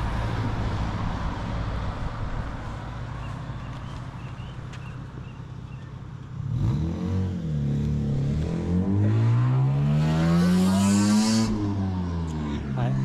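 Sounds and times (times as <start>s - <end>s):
vehicle engine accelerating: 0.0s - 13.0s.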